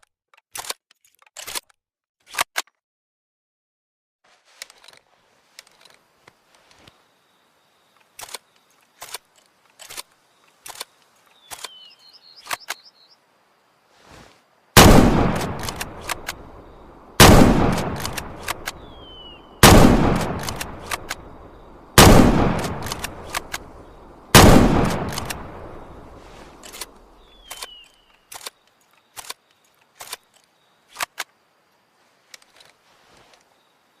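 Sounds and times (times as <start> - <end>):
rifle shots echoing: 14.8 - 27.0
rifle bolt clicking: 14.9 - 16.5, 17.2 - 19.0, 19.6 - 21.4, 22.0 - 23.7, 24.4 - 25.8.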